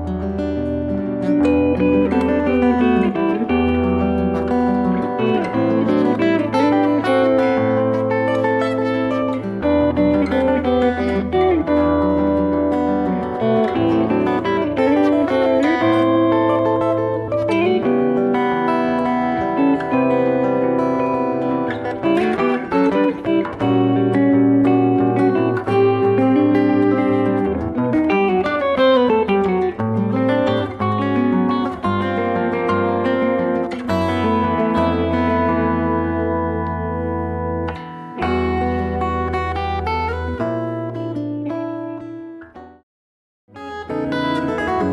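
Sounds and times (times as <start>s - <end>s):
plucked acoustic guitar music: 0.0s - 42.8s, 43.5s - 44.9s.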